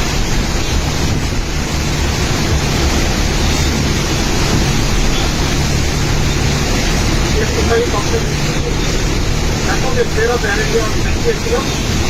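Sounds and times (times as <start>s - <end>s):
loud steady rushing noise: 0.0s - 12.0s.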